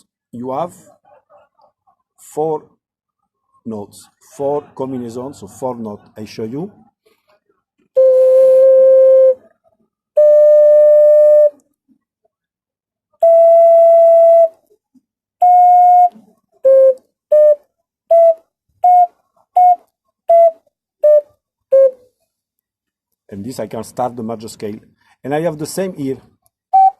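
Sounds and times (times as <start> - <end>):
ocarina playing notes: 8.0 - 9.5, 10.2 - 11.6, 13.2 - 14.7, 15.4 - 22.0.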